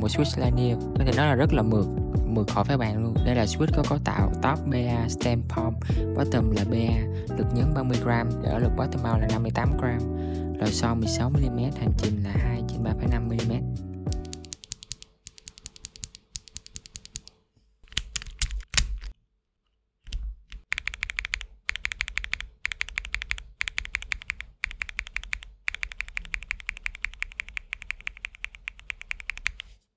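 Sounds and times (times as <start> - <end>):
typing on mechanical keyboard: 14.1 - 19.1, 20.6 - 29.7.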